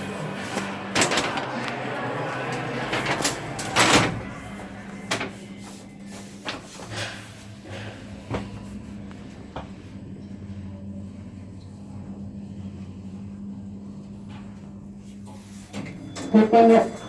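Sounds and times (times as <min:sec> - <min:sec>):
lift drive humming: 0:00.0 - 0:12.4.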